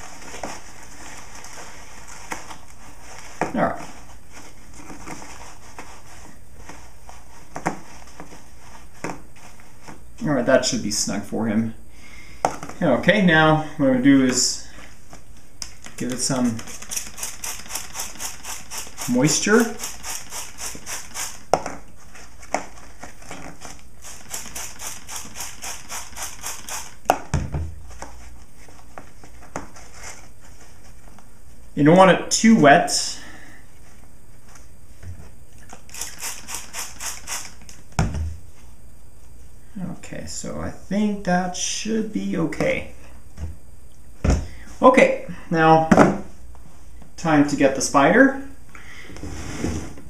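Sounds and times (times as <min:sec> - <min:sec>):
spray mister squirting: 0:16.3 - 0:21.4, 0:24.0 - 0:27.0, 0:35.9 - 0:37.7.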